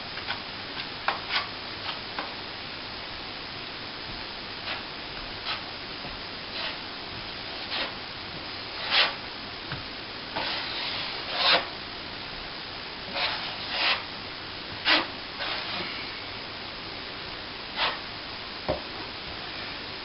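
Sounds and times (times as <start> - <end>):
trowel scraping wet plaster: 13.1 - 14.0, 14.8 - 15.9.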